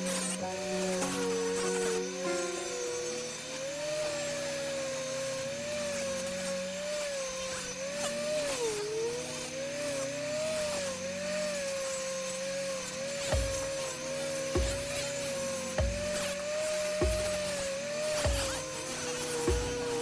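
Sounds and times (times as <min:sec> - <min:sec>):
power tool motor whining: 0:00.0 - 0:20.0.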